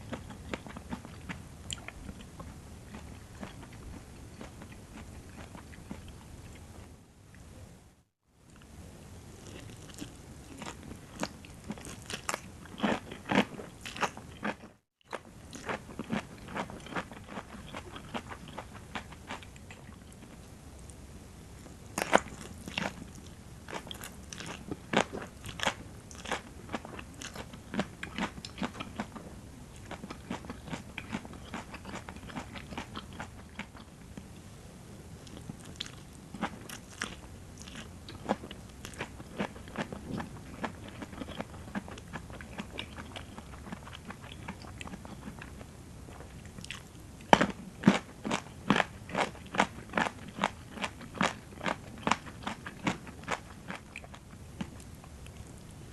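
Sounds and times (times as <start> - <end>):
crisp crunching while chewing: 9.4 - 20.4, 21.9 - 29.2.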